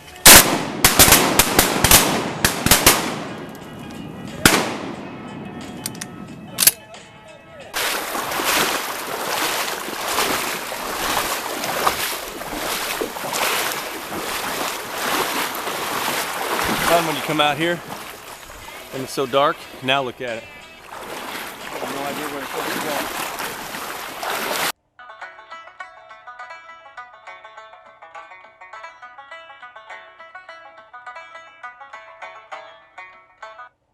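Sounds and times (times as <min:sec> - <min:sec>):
shotgun shots: 0:00.2 - 0:06.8
pulsing rushing water: 0:07.8 - 0:24.7.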